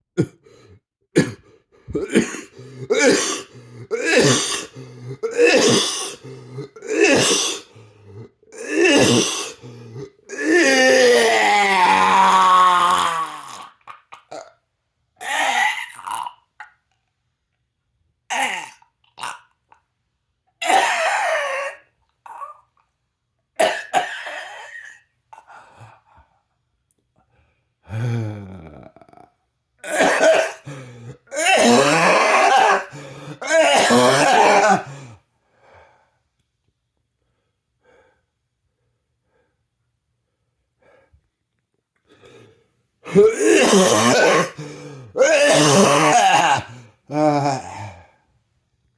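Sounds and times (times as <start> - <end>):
man coughing: 0.2 - 0.5, 1.2 - 7.7, 8.6 - 10.1, 29.9 - 35.2, 43.1 - 46.8.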